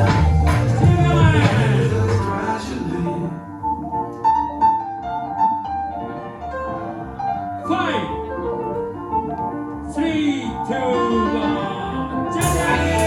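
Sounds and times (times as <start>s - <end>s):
band with heavy bass: 0.0s - 2.8s, 12.4s - 13.0s
sparse keyboard notes: 0.0s - 13.0s.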